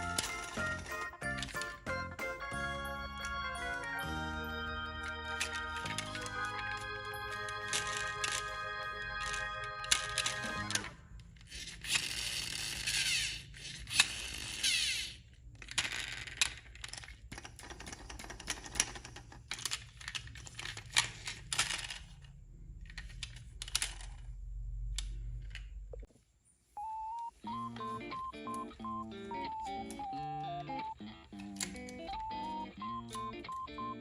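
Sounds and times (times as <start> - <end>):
plastic gears clicking and rattling: 0.0 - 2.2, 5.3 - 25.9
small electric motor whirring: 11.5 - 15.2.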